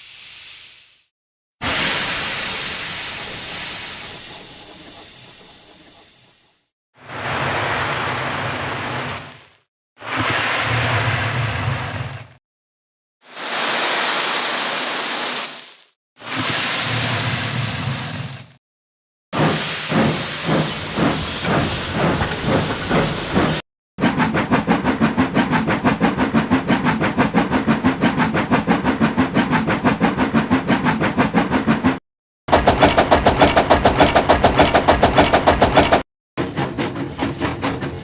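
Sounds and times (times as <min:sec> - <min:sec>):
steam hiss: 0:01.6 - 0:06.4, 0:32.5 - 0:36.0
steam locomotive chuffing: 0:01.7 - 0:06.4, 0:19.6 - 0:23.6, 0:32.5 - 0:36.0.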